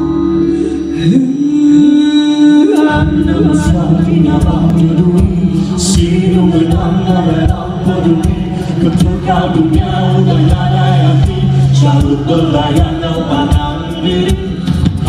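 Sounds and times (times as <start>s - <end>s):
held drone tones: 0.0s - 15.0s
live band playing: 0.0s - 15.0s
person singing: 0.0s - 15.0s.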